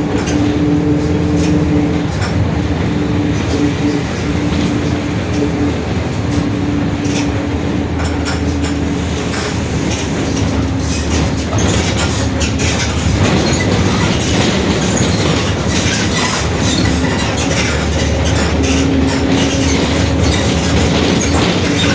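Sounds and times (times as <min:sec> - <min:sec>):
bus differential whine: 0:00.0 - 0:21.9
bus running rumble: 0:00.0 - 0:21.9
rattles: 0:08.0 - 0:21.9.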